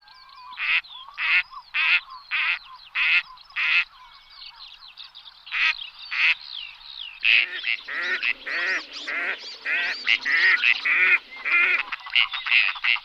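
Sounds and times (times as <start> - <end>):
birds chirping and whistling: 0.1 - 13.0
duck quacking: 0.6 - 3.9, 7.2 - 13.0.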